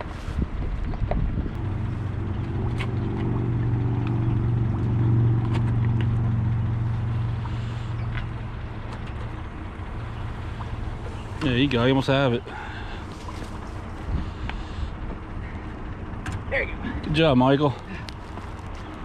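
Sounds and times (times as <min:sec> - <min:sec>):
engine running low hum: 0:00.0 - 0:19.0.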